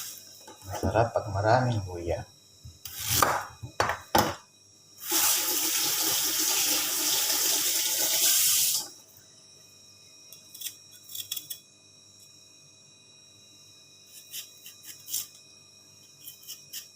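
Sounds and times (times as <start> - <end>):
water running from a tap: 5.0 - 8.9.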